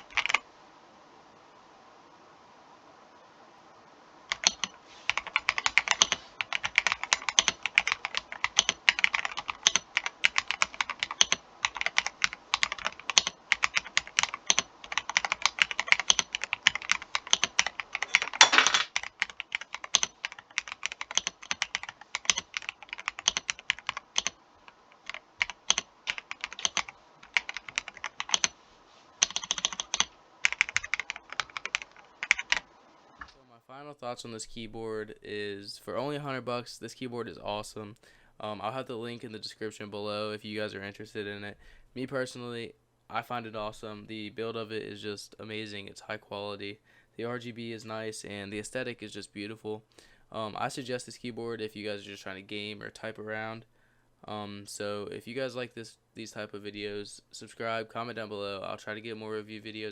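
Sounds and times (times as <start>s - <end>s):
mechanical keyboard typing: 0.0s - 0.4s, 4.3s - 28.6s, 29.2s - 33.3s.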